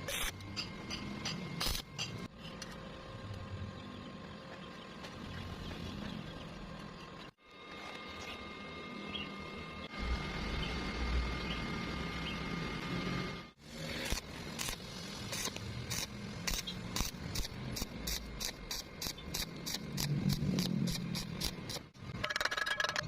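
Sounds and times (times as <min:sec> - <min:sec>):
steady hum: 0:00.0 - 0:22.3
welding arc crackle: 0:13.6 - 0:22.0.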